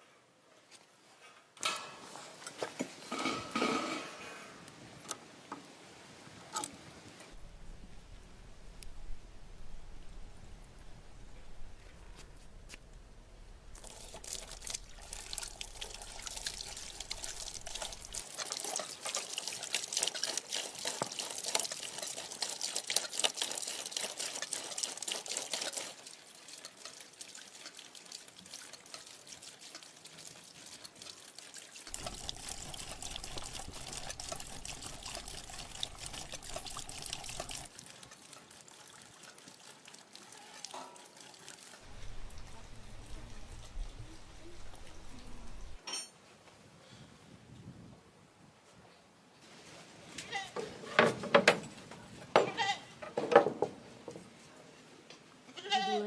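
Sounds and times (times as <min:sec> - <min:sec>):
liquid pouring and trickling: 0:13.6 - 0:45.8.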